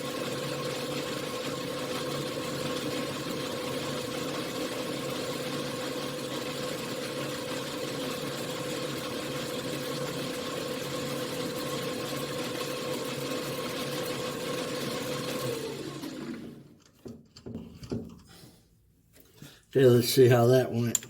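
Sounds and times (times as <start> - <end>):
lathe motor whining: 0.0 - 16.7.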